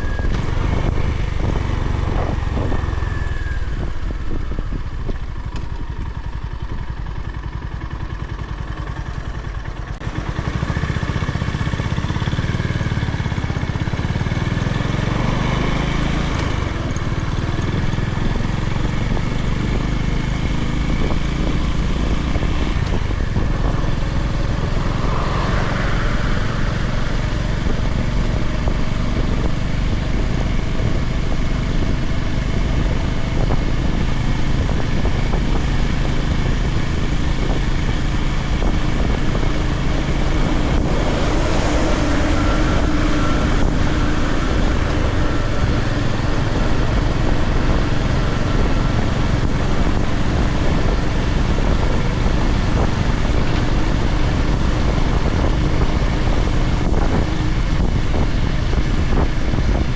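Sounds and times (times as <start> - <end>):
wind on microphone: 0.0 - 6.5, 10.2 - 59.9
motorcycle engine running: 0.0 - 59.9
rush of hiss: 23.2 - 28.7, 38.8 - 47.5.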